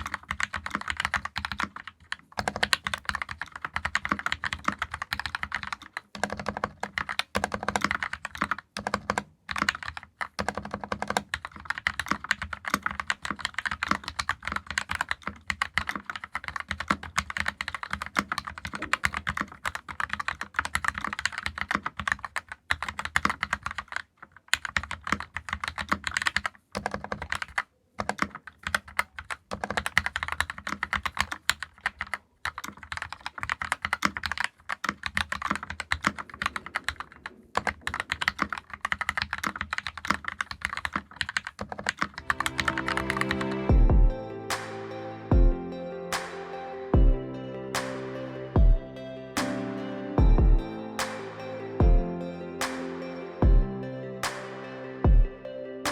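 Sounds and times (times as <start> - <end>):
mechanical keyboard typing: 0.0 - 43.6.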